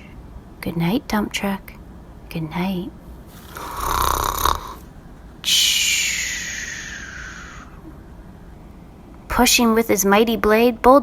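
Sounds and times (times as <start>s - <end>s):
book page turning: 3.3s - 3.7s.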